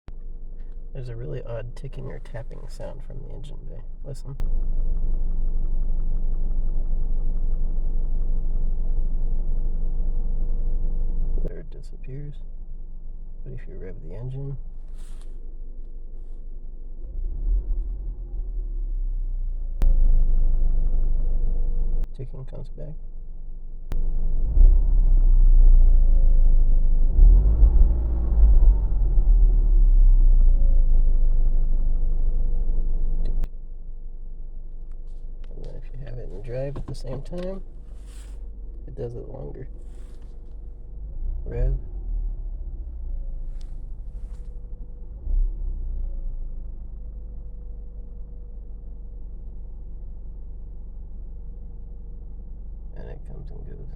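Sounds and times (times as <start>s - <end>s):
car engine idling: 0.1s - 17.2s, 18.0s - 53.9s
car engine revving: 23.9s - 33.5s
short hissing: 37.9s - 38.4s.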